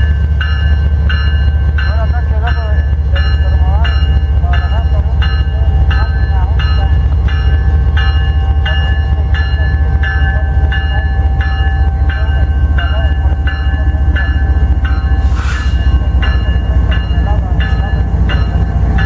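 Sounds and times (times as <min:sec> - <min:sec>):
diesel locomotive engine running: 0:00.0 - 0:19.0
locomotive bell ringing: 0:00.0 - 0:19.0
air hiss: 0:15.2 - 0:16.0.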